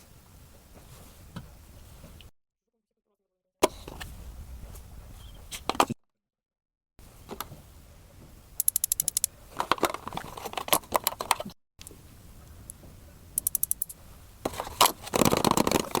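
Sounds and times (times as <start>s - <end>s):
rapid crisp ticks: 8.6s - 9.3s, 13.4s - 14.0s
game pieces knocking and rustling: 13.4s - 13.9s.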